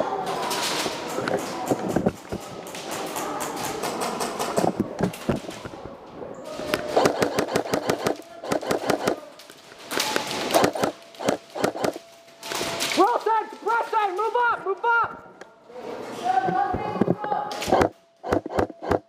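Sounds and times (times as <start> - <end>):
airsoft guns firing rapid bursts: 6.9 - 9.2, 10.5 - 12.0.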